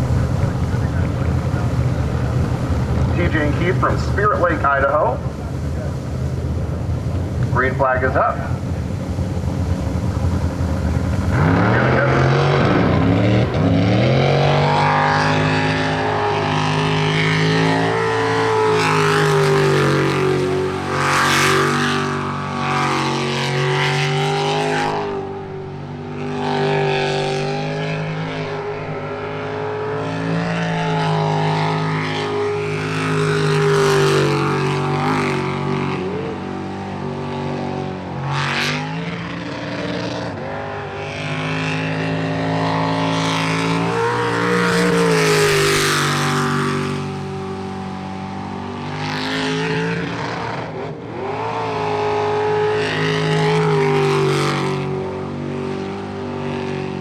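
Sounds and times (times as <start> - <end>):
rushing bursts: 0.0 - 21.0
boat engine racing: 0.0 - 57.0.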